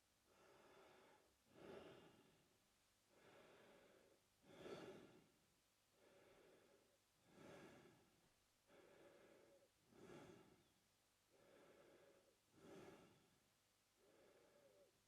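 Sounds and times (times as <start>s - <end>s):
man breathing through mouth: 8.7s - 10.7s, 11.4s - 13.3s.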